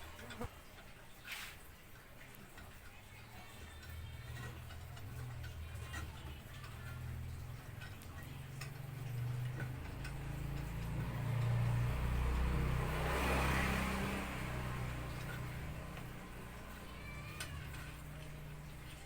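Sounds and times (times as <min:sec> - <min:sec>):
vehicle engine passing by: 0:03.8 - 0:19.0.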